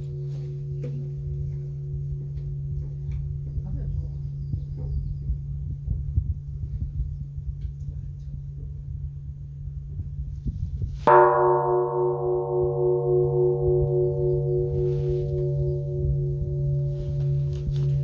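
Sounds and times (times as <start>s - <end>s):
bronze bell ringing: 11.1s - 18.0s.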